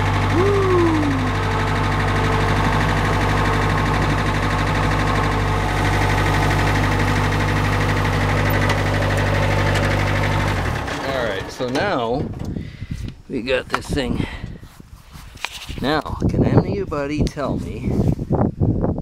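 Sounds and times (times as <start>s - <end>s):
engine idling: 0.0s - 13.0s.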